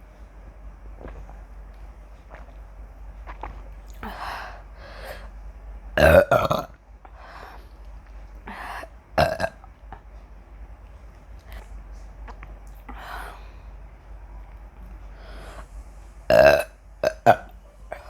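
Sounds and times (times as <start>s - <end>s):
soft breathy sounds: 0.0s - 5.4s, 7.0s - 9.0s, 9.6s - 16.3s
woman burping: 9.2s - 9.6s.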